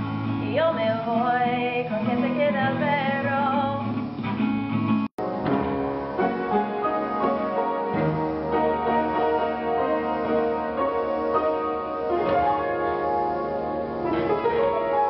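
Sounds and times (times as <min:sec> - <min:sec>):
piano music: 0:05.2 - 0:15.0.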